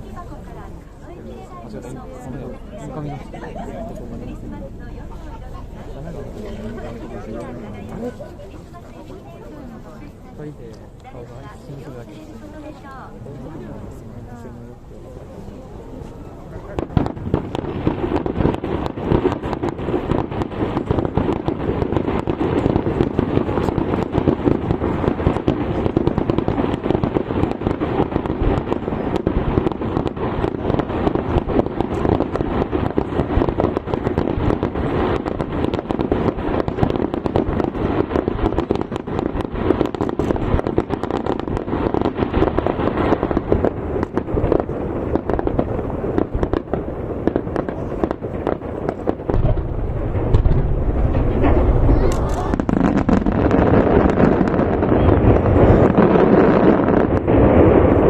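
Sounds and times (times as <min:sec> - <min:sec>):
firework crackle: 0:00.0 - 0:58.0
firework shells bursting: 0:16.8 - 0:58.0.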